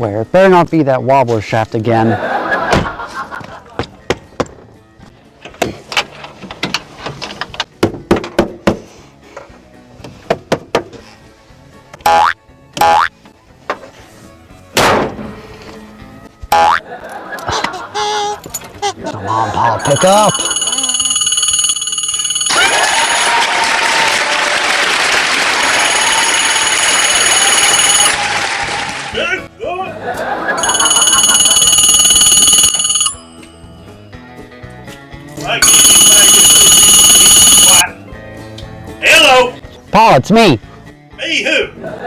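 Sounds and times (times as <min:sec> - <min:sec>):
plucked-sounding background music: 0:11.7 - 0:20.6
faint steady high tones: 0:19.8 - 0:22.6, 0:35.6 - 0:37.8
audience applause: 0:22.5 - 0:29.2.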